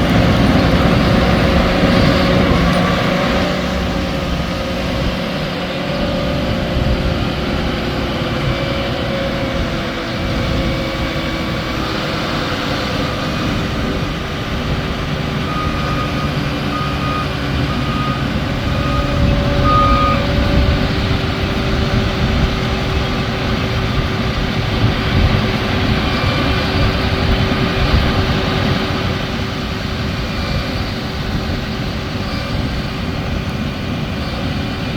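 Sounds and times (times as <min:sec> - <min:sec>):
tractor machinery running: 0:00.0 - 0:34.9
reversing alarm beeps: 0:15.4 - 0:20.6.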